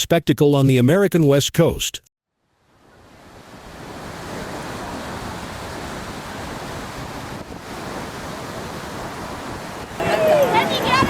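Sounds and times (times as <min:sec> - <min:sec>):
ocean surf washing in: 0:02.5 - 0:11.0.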